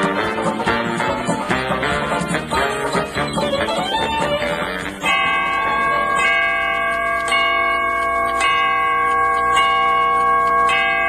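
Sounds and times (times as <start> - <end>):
banjo music: 0.0 - 6.4
bell chiming: 4.3 - 11.0.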